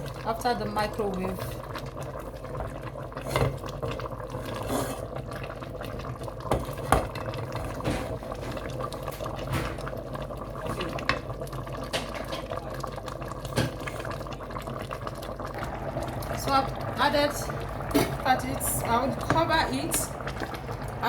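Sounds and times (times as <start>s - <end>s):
soup bubbling in pot: 0.0s - 21.0s
spoon knocking against pot: 6.5s - 7.1s.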